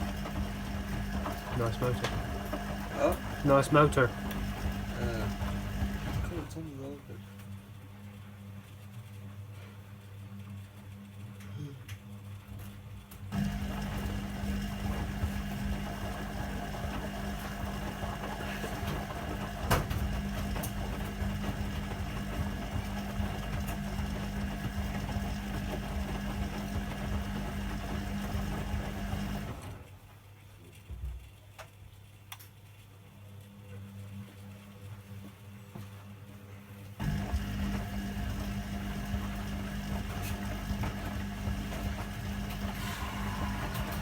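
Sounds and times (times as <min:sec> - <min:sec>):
washing machine motor humming: 0:00.0 - 0:07.9, 0:12.8 - 0:30.2, 0:36.9 - 0:44.0.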